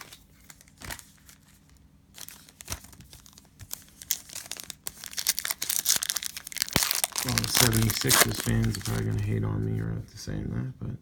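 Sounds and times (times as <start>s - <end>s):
cellophane wrapper crinkling: 0.0s - 9.4s
trading cards being handled: 0.0s - 9.8s.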